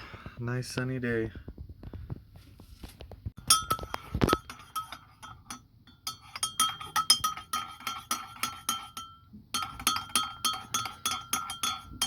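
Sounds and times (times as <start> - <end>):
spoon clinking against mug: 3.4 - 12.0.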